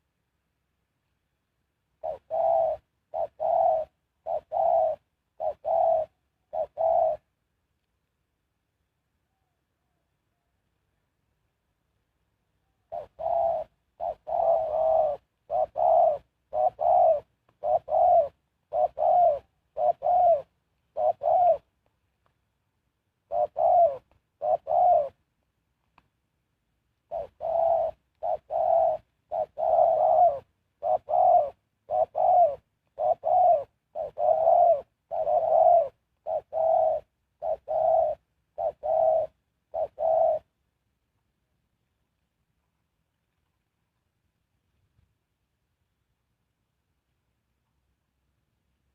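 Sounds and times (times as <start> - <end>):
dove cooing: 2.0 - 7.3, 12.7 - 21.8, 23.2 - 25.2, 27.0 - 40.6.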